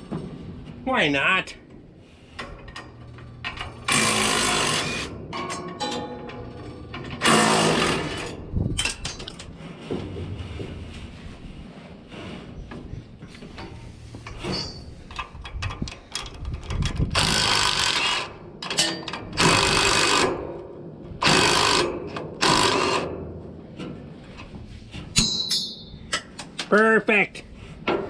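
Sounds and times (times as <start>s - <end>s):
power tool bursts: 3.9s - 5.1s, 7.2s - 8.3s, 21.2s - 23.1s
metal clatter: 4.8s - 10.8s, 13.2s - 17.2s, 23.7s - 26.7s.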